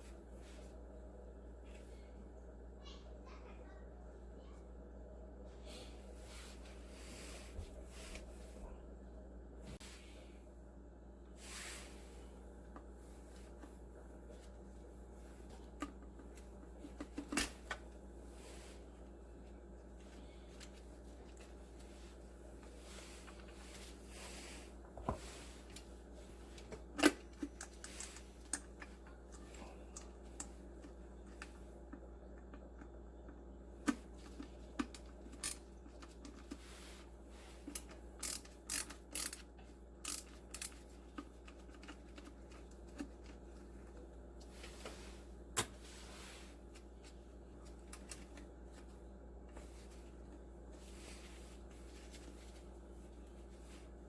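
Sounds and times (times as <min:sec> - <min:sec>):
steady low hum: 0:00.0 - 0:54.0.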